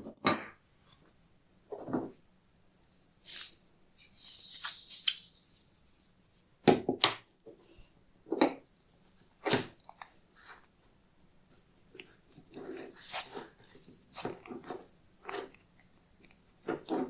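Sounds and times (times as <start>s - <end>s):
knocks and clatters of objects: 1.7s - 2.2s
rubbing or scraping: 12.2s - 15.6s.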